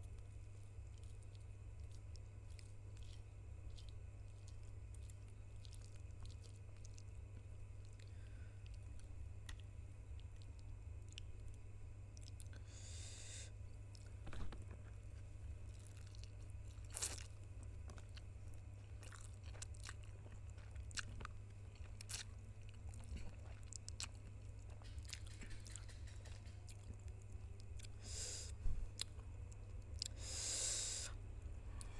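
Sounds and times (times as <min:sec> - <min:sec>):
chewing noodles: 0:00.0 - 0:12.6, 0:14.9 - 0:31.1
low steady hum: 0:00.0 - 0:31.9
short hissing: 0:30.2 - 0:31.2.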